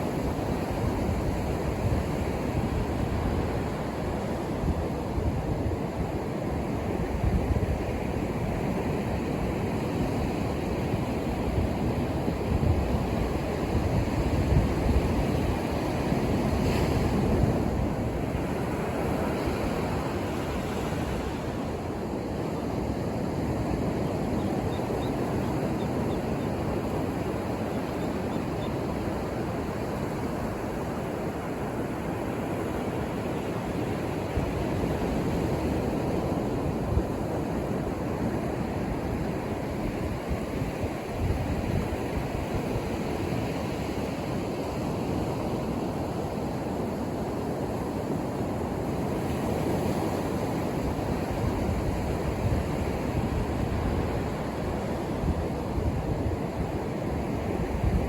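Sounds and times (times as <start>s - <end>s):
ocean waves breaking: 15.4s - 39.5s.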